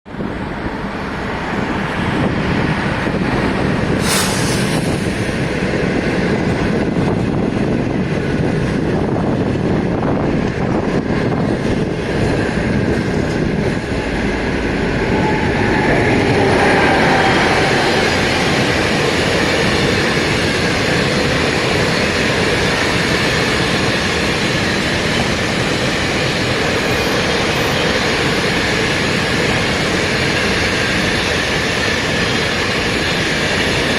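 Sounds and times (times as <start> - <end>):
train wheels rumbling on rails: 0.1 - 33.9.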